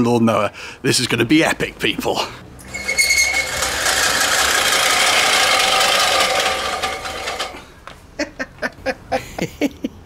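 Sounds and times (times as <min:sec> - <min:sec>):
power tool running: 0:02.7 - 0:07.6.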